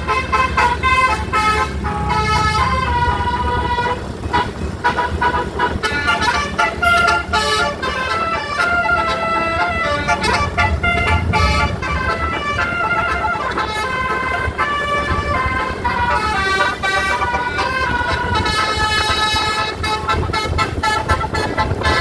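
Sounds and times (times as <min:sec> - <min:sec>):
large vehicle rumble: 0:00.0 - 0:22.0
multi-note air horn tune: 0:00.0 - 0:22.0.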